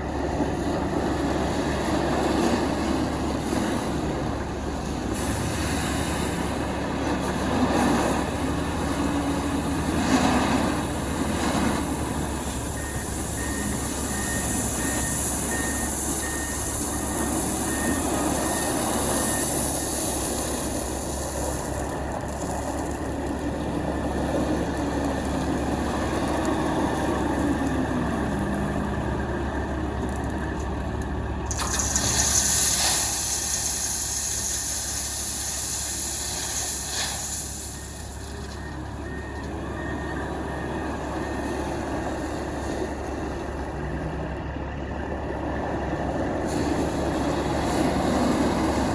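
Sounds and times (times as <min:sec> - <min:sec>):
diesel truck engines running: 0:00.0 - 0:48.9
hiss: 0:31.7 - 0:38.1.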